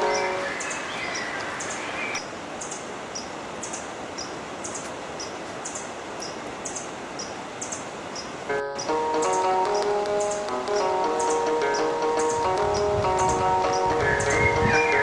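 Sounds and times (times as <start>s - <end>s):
river water rushing: 0.0s - 15.0s
music: 8.5s - 15.0s
high short bird chirp: 13.9s - 15.0s.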